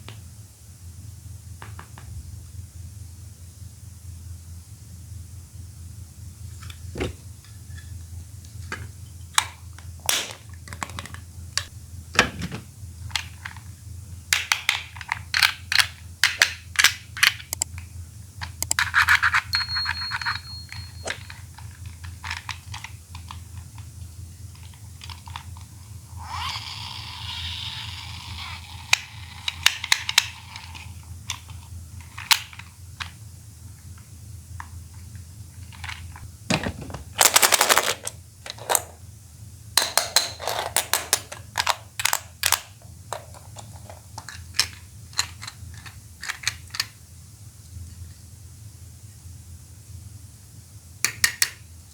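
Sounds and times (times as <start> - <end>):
steady low hum: 0.0 - 51.0
brief thin tone: 19.5 - 21.3
plastic toy balls clicking: 35.8 - 39.0
rustling and scraping: 35.8 - 39.0.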